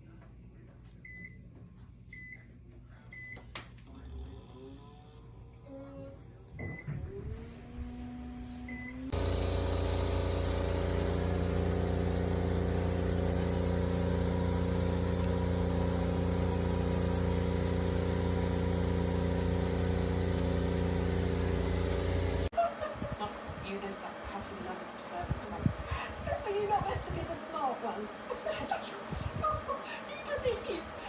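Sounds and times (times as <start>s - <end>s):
motor humming: 6.7s - 31.0s.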